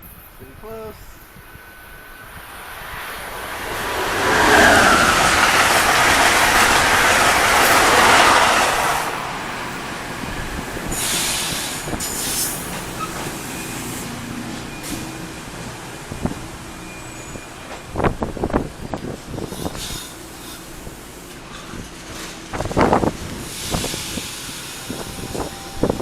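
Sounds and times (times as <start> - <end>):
electric train passing: 1.0 - 26.0.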